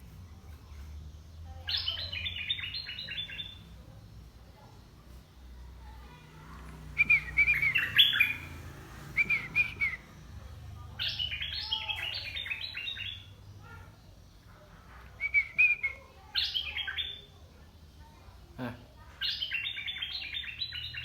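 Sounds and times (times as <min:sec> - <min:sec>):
bird chirps: 0:00.7 - 0:03.8, 0:06.7 - 0:10.3, 0:10.9 - 0:14.5, 0:15.1 - 0:17.3, 0:19.2 - 0:21.0
bird whistled calls: 0:07.0 - 0:08.5, 0:09.1 - 0:10.1, 0:15.2 - 0:17.1.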